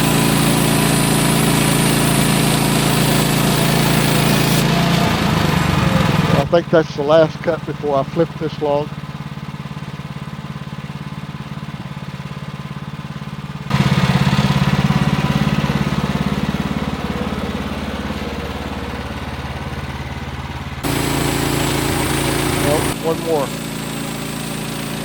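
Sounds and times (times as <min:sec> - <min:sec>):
band blade cutting log: 0:00.0 - 0:06.5, 0:20.8 - 0:25.0
gas engine running: 0:00.0 - 0:25.0.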